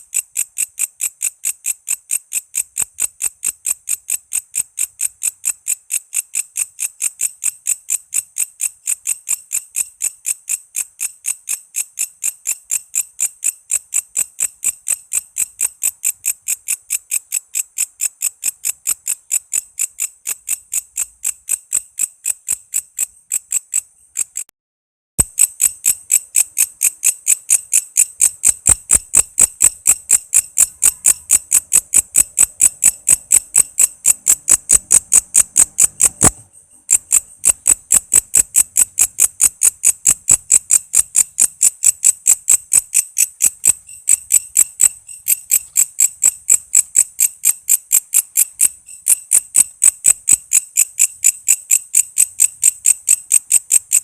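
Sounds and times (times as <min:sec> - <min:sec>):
insect chirping shrill pulses: 0:02.9 - 0:24.5, 0:25.2 - 0:54.0
click: 0:25.2 - 0:54.0.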